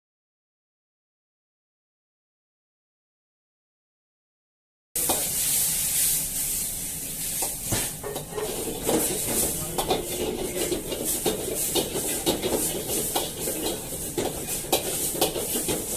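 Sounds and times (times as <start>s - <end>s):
food sizzling in a wok: 5.0s - 15.9s
metal spatula scraping a pan: 5.0s - 15.9s.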